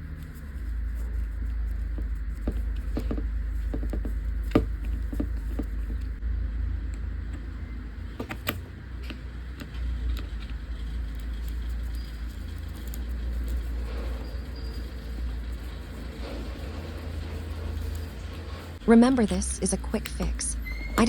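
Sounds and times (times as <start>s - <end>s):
steady low rumble: 0.0s - 21.0s
plug and wires clicking and rattling: 8.1s - 13.6s.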